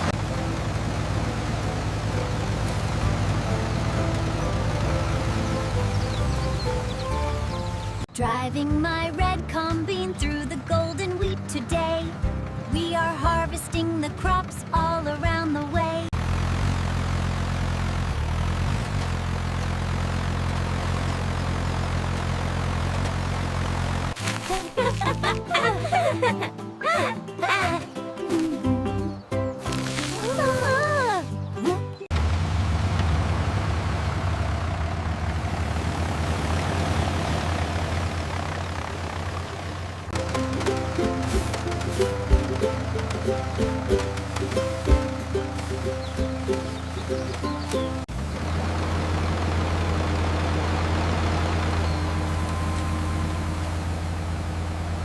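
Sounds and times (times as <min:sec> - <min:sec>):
harvester engine droning: 0:00.0 - 0:55.0
music: 0:01.6 - 0:16.0, 0:24.2 - 0:32.1, 0:40.2 - 0:48.1.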